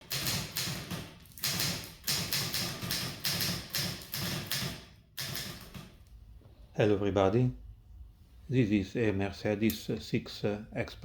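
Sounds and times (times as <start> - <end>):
manual typewriter typing: 0.0 - 6.0.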